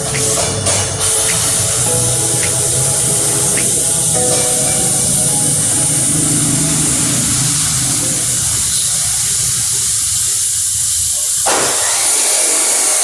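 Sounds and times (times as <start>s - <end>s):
machine cutting steel hissing: 0.0s - 13.0s.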